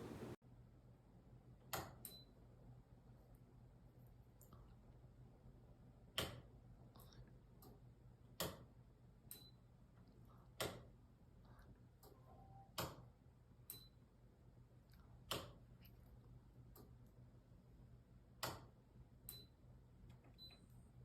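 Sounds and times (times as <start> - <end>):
ceiling fan ticking: 0.0 - 0.4
faint low hum: 0.0 - 21.0.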